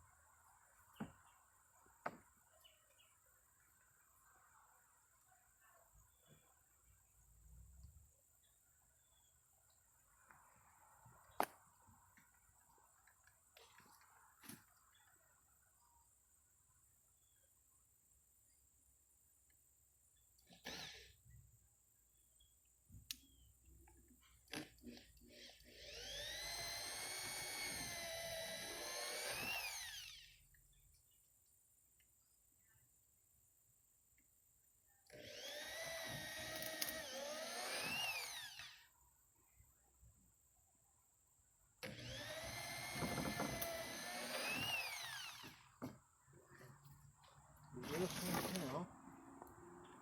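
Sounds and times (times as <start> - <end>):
electric drill boring wood: 20.6 - 21.2, 24.5 - 30.4, 35.1 - 38.9, 41.8 - 46.0, 47.8 - 48.9.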